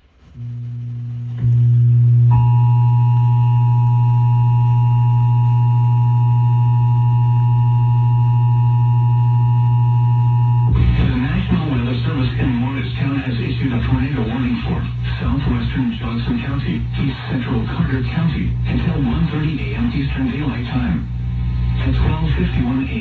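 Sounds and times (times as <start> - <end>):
loud steady low hum: 0.0 - 23.0
two-tone attention signal: 2.3 - 8.8.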